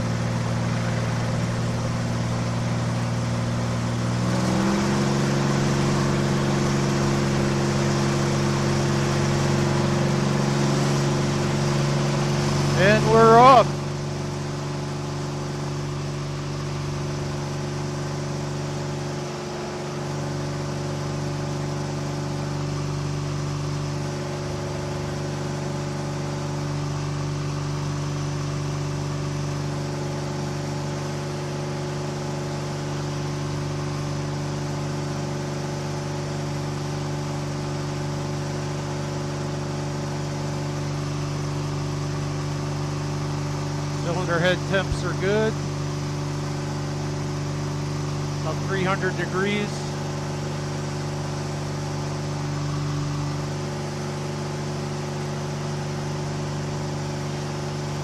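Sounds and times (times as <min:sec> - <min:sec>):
light airplane engine running: 0:00.0 - 0:58.0.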